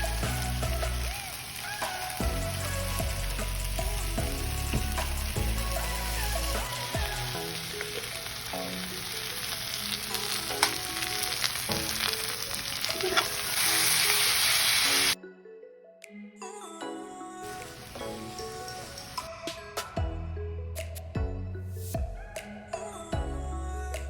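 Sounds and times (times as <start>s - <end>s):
food sizzling in a pan: 0.0s - 15.2s
background music: 0.0s - 24.0s.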